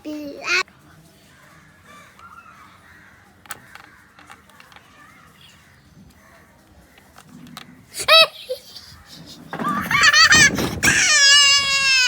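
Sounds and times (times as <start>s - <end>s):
game pieces clicking on board: 3.4s - 4.9s.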